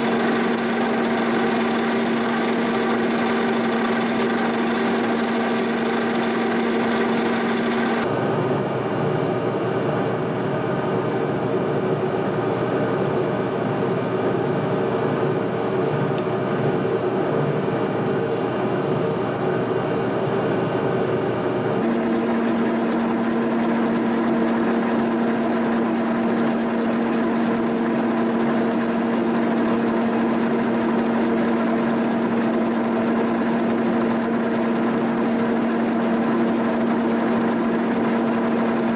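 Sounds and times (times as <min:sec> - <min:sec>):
milling machine cutting steel: 0:00.0 - 0:08.0.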